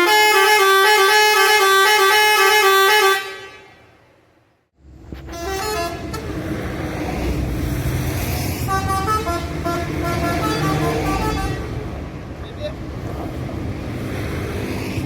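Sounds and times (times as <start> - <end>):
multi-tone bus air horn melody: 0.0 - 3.9, 5.2 - 6.5, 8.6 - 11.8.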